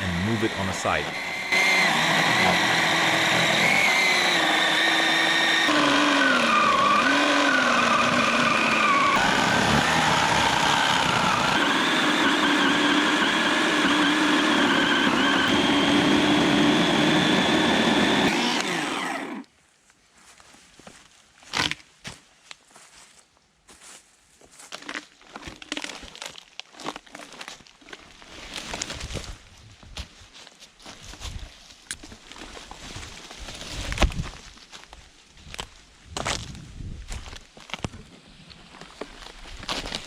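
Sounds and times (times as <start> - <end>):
electric chainsaw cutting wood: 0.0 - 19.5.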